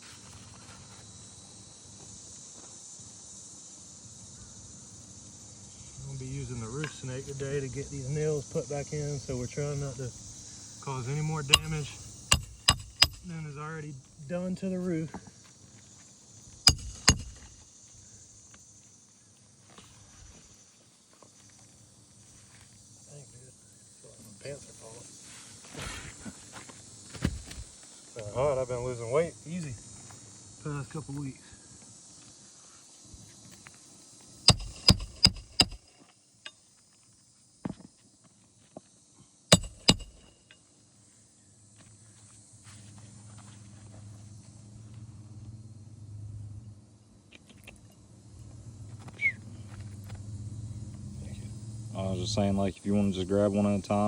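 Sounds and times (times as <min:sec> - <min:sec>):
insects droning: 0:00.0 - 0:54.0
sharp metal strikes: 0:11.5 - 0:13.4, 0:16.7 - 0:17.6, 0:34.5 - 0:35.9, 0:39.5 - 0:40.4.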